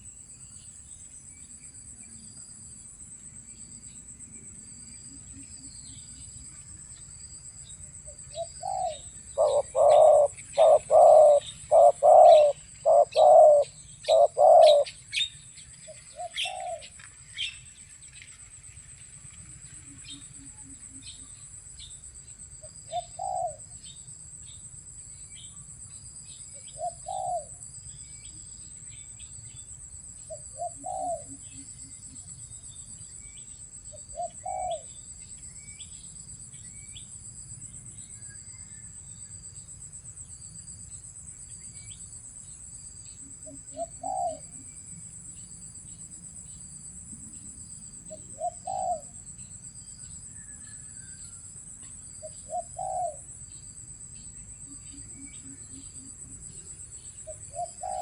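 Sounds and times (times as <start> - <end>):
dove cooing: 8.3 - 15.0, 16.1 - 16.9, 22.9 - 23.7, 26.7 - 27.6, 30.3 - 31.5, 34.1 - 34.9, 43.4 - 44.7, 48.1 - 49.2, 52.2 - 53.3, 57.3 - 58.0
high-pitched insect drone: 8.6 - 15.0
faint small-bird chirps: 37.8 - 39.7, 47.2 - 58.0.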